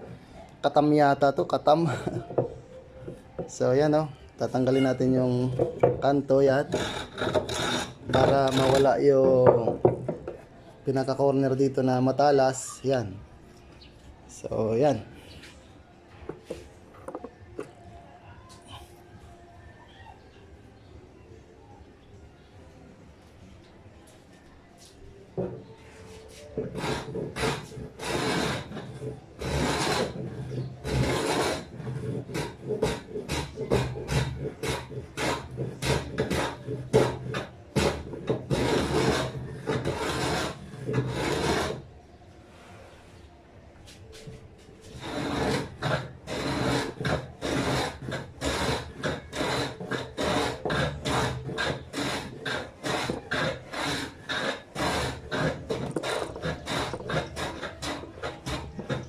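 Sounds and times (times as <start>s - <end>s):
hand plane scraping wood: 4.6s - 10.2s, 26.0s - 41.9s, 43.9s - 59.0s.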